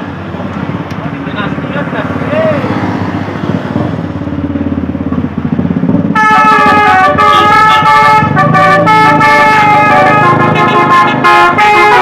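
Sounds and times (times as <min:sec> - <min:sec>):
engine running: 0:00.0 - 0:12.0
musical air horn tune: 0:06.2 - 0:12.0.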